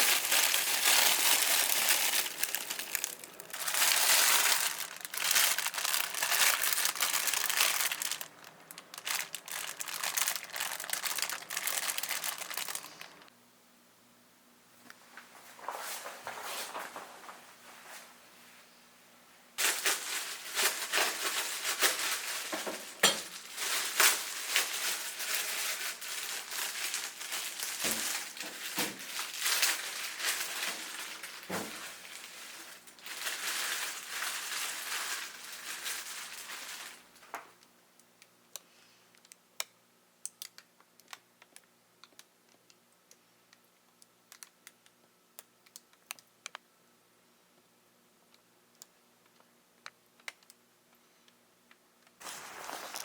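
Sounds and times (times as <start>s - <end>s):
crinkling and rustling: 0.0s - 13.3s, 14.9s - 18.2s, 19.6s - 37.7s, 51.7s - 53.0s.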